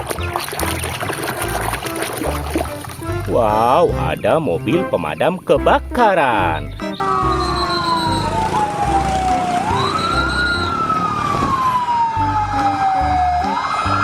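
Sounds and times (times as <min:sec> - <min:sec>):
fire engine siren wailing: 0:07.0 - 0:14.0.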